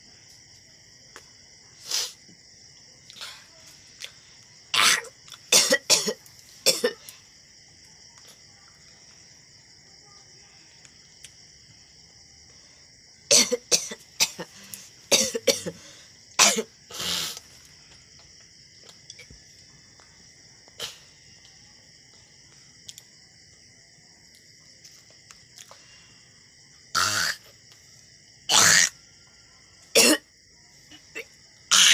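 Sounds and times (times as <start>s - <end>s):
person coughing hard: 4.8s - 7.0s, 13.3s - 15.8s, 16.4s - 16.7s, 29.9s - 30.3s.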